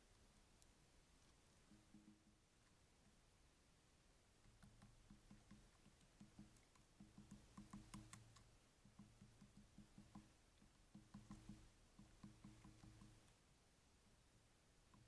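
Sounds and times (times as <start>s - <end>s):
low steady hum: 0.0s - 15.0s
woodpecker tapping: 1.6s - 3.2s, 4.4s - 13.4s.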